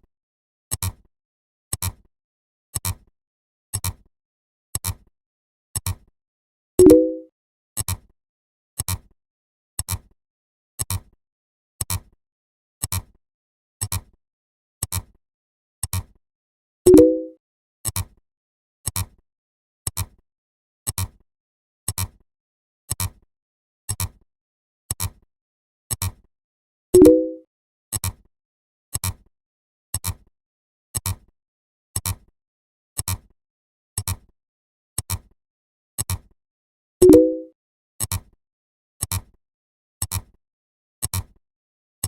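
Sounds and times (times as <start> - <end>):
stacked pitch tone: 6.8 - 7.3, 16.9 - 17.4, 27.0 - 27.4, 37.0 - 37.5.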